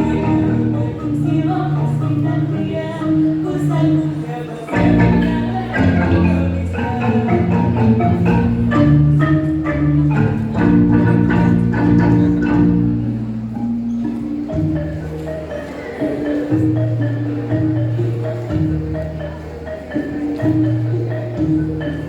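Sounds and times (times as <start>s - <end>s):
sustained bass notes: 0.0s - 3.4s, 4.7s - 15.3s
wooden xylophone ensemble melody: 0.0s - 22.0s.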